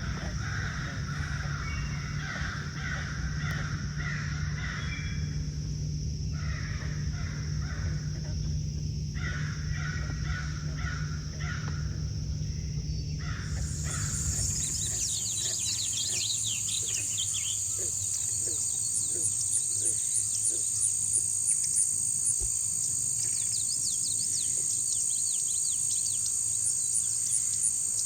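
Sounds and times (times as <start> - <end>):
frogs croaking: 0.0 - 28.0
high insect-like drone: 0.0 - 28.0
chorus of high chirps: 7.2 - 28.0.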